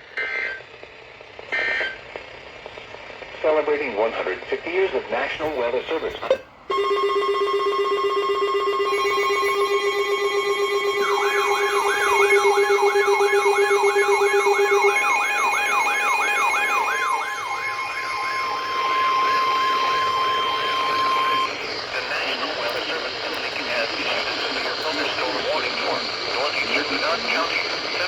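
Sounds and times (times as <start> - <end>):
high steady alarm tone: 6.2 - 28.0
electronic siren sweeping: 6.7 - 21.6
low buzzing tone: 6.7 - 21.6.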